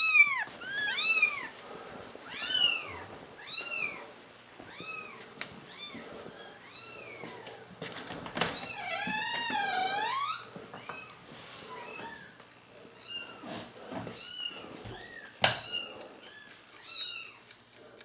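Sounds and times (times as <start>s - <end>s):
kittens meowing: 0.0s - 1.5s, 2.3s - 4.0s.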